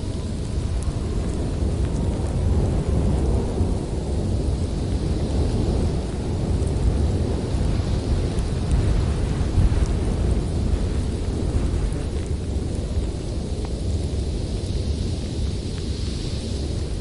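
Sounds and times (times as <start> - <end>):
blizzard wind gusting: 0.0 - 17.0.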